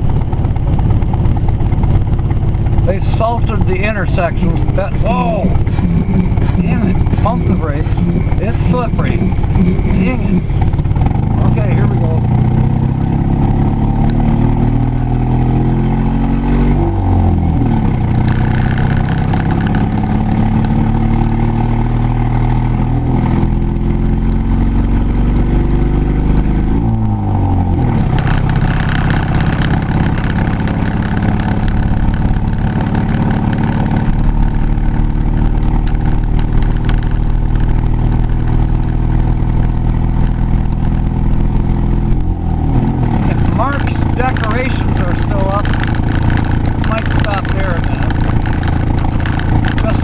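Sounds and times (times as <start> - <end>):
vehicle engine accelerating: 0.0 - 50.0.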